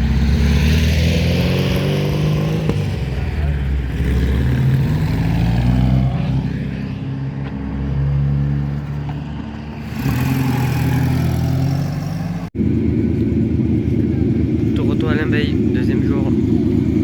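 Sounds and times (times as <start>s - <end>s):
louder engine: 0.0s - 7.1s
car engines running: 0.0s - 17.0s.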